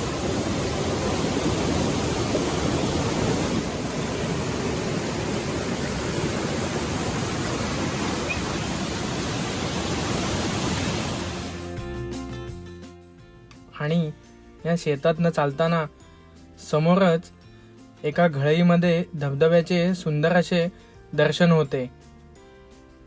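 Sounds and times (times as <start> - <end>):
mountain stream rushing: 0.0 - 11.7.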